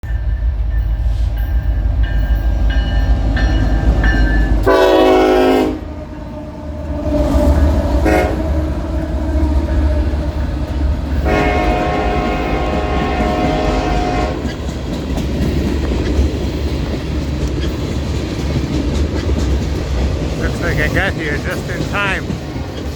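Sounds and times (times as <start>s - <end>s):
freight train rumbling past: 0.0s - 22.9s
train air horn: 4.6s - 5.9s, 8.0s - 8.5s, 11.2s - 14.5s.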